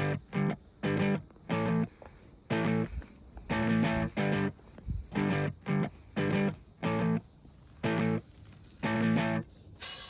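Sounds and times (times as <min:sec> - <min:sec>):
distorted electric guitar chords: 0:00.0 - 0:01.9, 0:02.5 - 0:02.9, 0:03.5 - 0:04.6, 0:05.2 - 0:07.2, 0:08.9 - 0:09.4.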